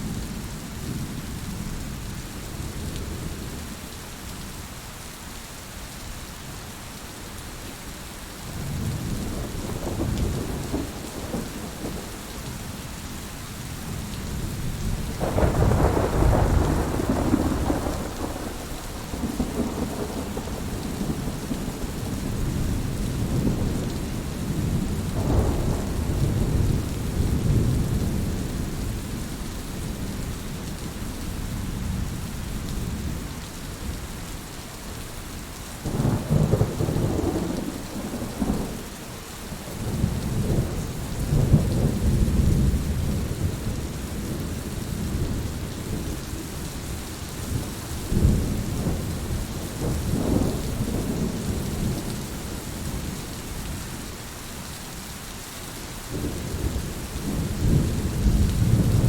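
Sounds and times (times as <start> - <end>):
heavy rain: 0.0 - 59.0
thunder rumbling: 8.6 - 12.8, 13.9 - 29.2, 35.9 - 39.0, 39.6 - 46.4, 47.3 - 53.2, 56.1 - 59.0.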